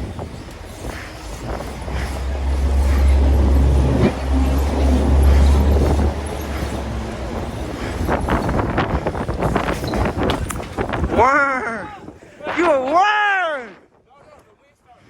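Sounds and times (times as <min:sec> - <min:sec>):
vehicle passing with low rumble: 0:00.0 - 0:11.0.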